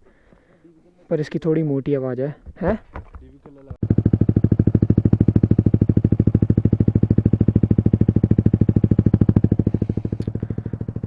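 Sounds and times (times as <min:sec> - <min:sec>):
motorcycle engine idling: 0:03.8 - 0:11.0.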